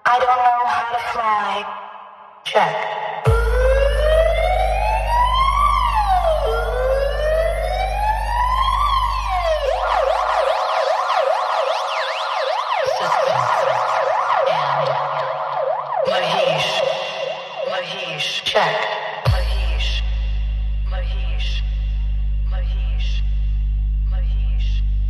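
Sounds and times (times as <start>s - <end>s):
deep steady bass tone: 3.3s - 10.7s, 19.3s - 25.0s
siren wailing and yelping: 3.3s - 19.3s.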